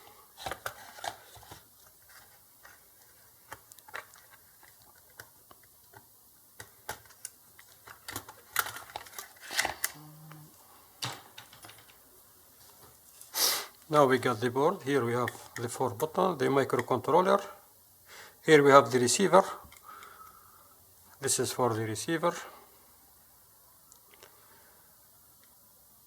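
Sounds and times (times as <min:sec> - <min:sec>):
plastic parts clicking and tapping: 0:00.4 - 0:10.0, 0:11.0 - 0:12.0.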